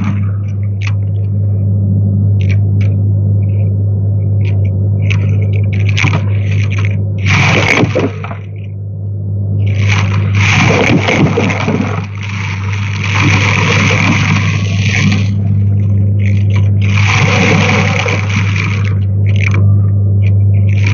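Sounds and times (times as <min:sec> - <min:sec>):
vacuum cleaner running: 0:09.6 - 0:19.6.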